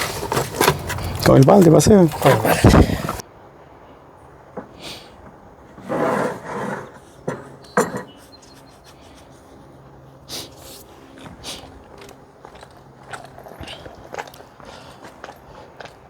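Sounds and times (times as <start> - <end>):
scraping in wet cement: 0.0 - 3.2, 5.8 - 7.6.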